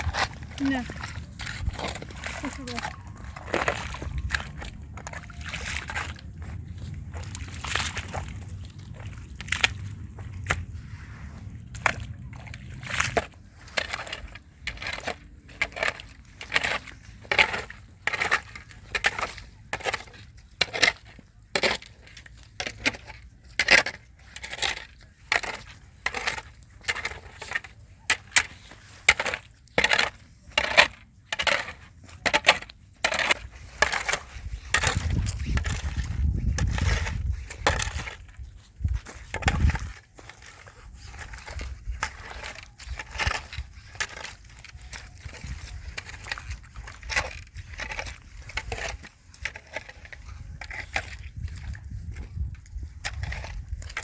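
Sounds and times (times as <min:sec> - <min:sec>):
low rumble: 0:00.0 - 0:13.5.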